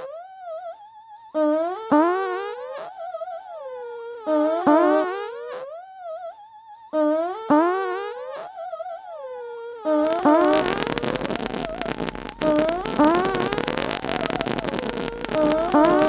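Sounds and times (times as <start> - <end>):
raspy buzzing noise: 9.9 - 16.0.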